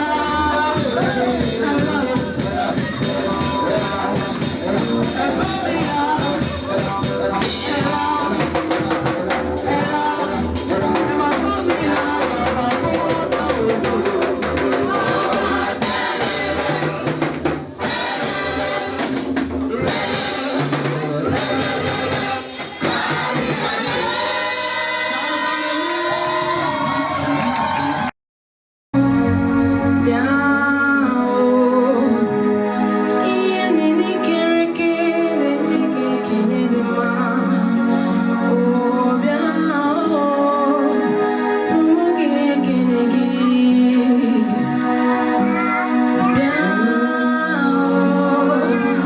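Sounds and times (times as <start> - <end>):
drum kit beat: 0.0 - 25.4
choir singing with band: 0.0 - 28.1, 29.1 - 49.0.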